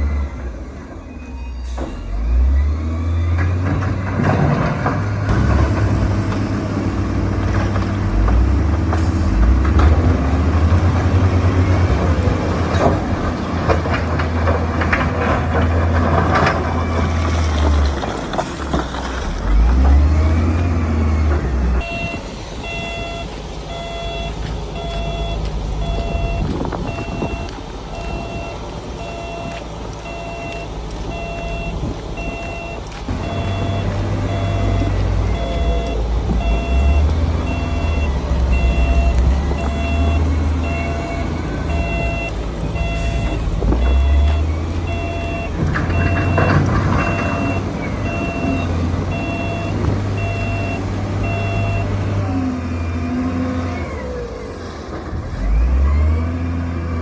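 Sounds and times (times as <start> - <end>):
reversing alarm beeping: 0.0 - 3.6, 19.9 - 54.3
heavy diesel machine working: 0.0 - 57.0.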